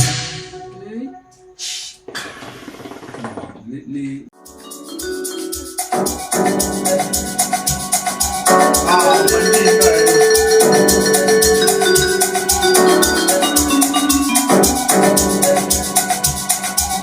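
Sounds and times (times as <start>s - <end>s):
held melodic chords: 4.4s - 17.0s.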